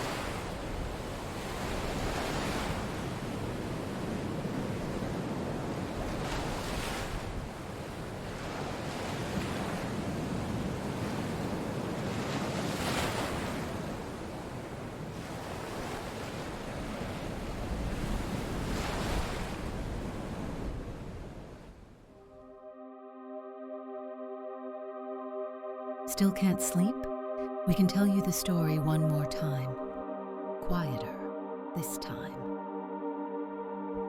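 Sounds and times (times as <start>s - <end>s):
gentle waves washing in: 0.0s - 22.3s.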